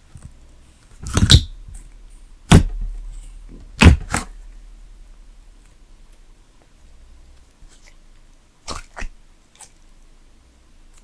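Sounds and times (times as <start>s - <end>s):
slime popping: 1.0s - 4.6s.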